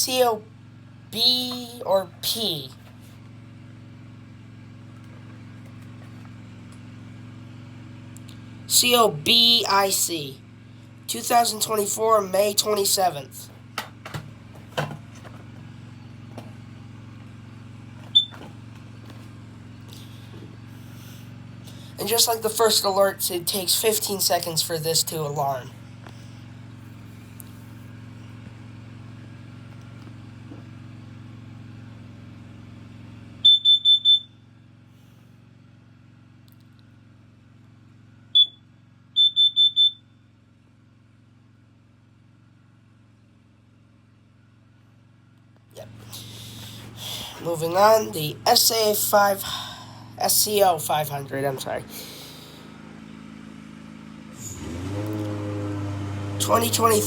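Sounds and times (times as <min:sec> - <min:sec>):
steady low hum: 0:00.0 - 0:32.0, 0:45.7 - 0:53.4
alarm high chirp: 0:33.5 - 0:34.2, 0:39.2 - 0:40.0.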